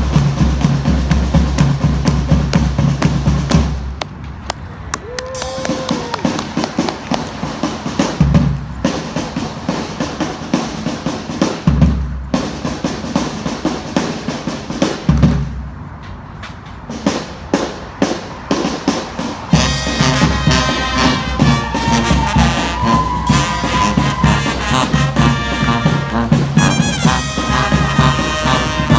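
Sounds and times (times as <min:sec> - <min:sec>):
drums playing a steady beat: 0:00.0 - 0:04.1, 0:05.8 - 0:15.8, 0:16.6 - 0:28.9
brass horns playing: 0:19.4 - 0:28.9.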